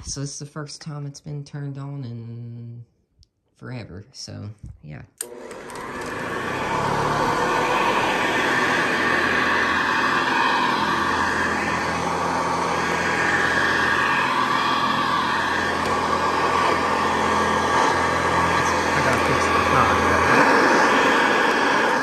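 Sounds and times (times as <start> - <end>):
upright vacuum cleaner running: 5.2 - 22.0.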